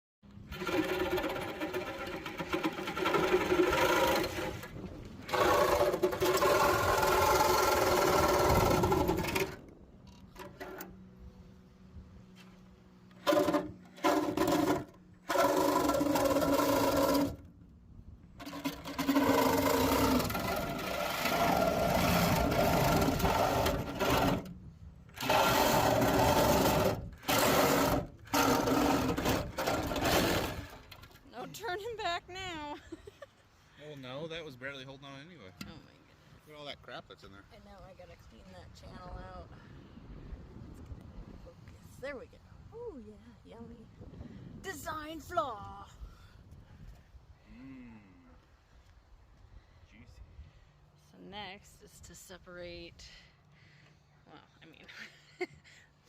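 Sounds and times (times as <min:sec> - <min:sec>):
power tool cutting sheet metal: 0:00.4 - 0:09.6, 0:13.2 - 0:17.5, 0:18.4 - 0:24.6, 0:25.2 - 0:31.1.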